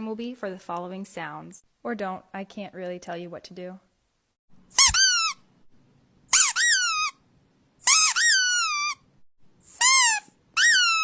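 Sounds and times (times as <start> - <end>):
squeaky dog toy squeaks: 4.7 - 5.5, 6.3 - 7.2, 7.8 - 9.1, 9.7 - 11.0.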